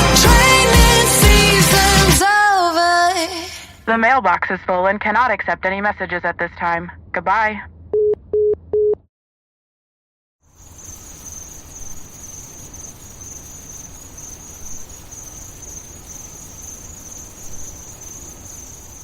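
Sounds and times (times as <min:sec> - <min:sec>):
crickets chirring: 0:10.5 - 0:19.0
faint hiss: 0:10.5 - 0:19.0.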